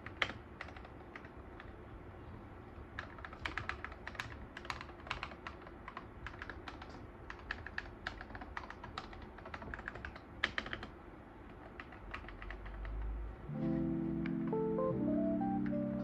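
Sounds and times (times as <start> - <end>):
typing on mechanical keyboard: 0.0 - 1.8, 2.7 - 13.2.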